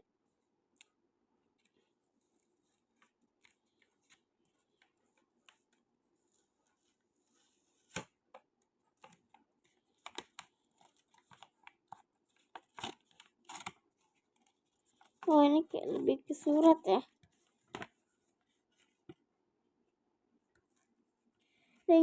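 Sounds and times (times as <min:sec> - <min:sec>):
paper envelope rustling: 0:09.0 - 0:19.0.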